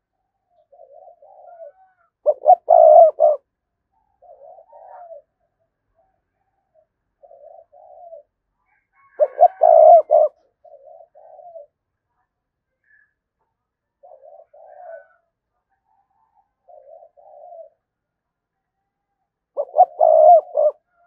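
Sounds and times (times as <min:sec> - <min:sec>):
dove cooing: 0:00.0 - 0:11.8, 0:14.0 - 0:15.3, 0:15.9 - 0:17.9, 0:19.5 - 0:21.0.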